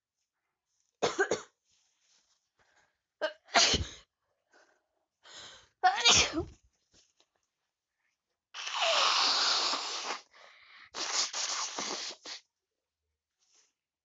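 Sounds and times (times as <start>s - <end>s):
person sneezing: 3.5s - 4.0s, 5.9s - 6.5s, 8.6s - 10.3s, 10.9s - 12.4s
gasping in-breath: 10.2s - 11.0s.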